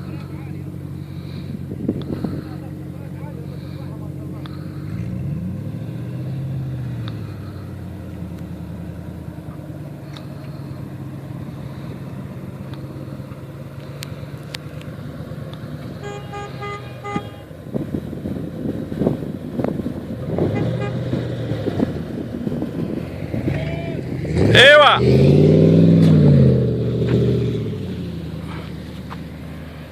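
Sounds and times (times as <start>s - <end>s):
off-road engine revving: 0.0s - 29.9s
car horn short beeps: 16.0s - 17.5s, 20.5s - 21.0s.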